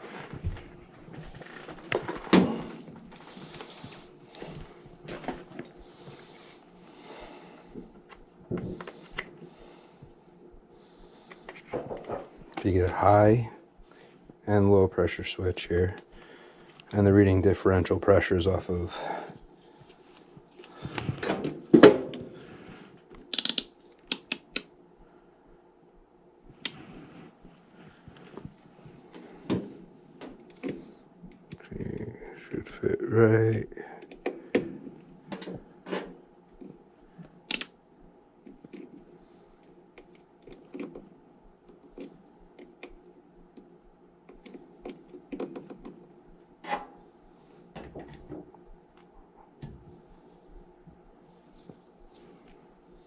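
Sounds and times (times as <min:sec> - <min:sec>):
faint steady hum: 0:00.0 - 0:53.0
sharp clicks of tools: 0:23.3 - 0:24.7, 0:37.5 - 0:37.7.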